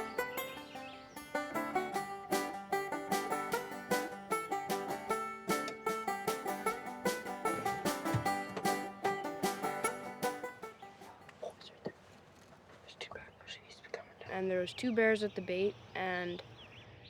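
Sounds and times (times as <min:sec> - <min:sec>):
bluegrass banjo tune: 0:00.0 - 0:11.4.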